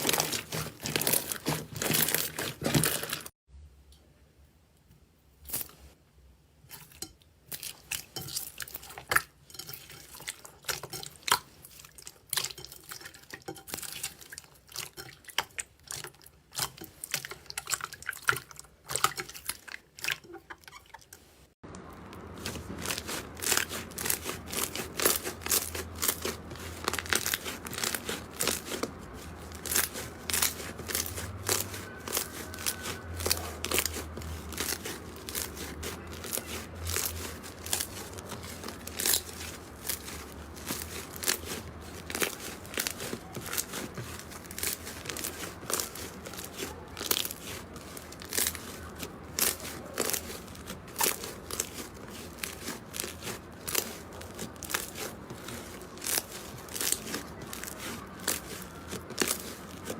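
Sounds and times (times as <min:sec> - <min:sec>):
slime crackling and popping: 0:21.8 - 0:59.9.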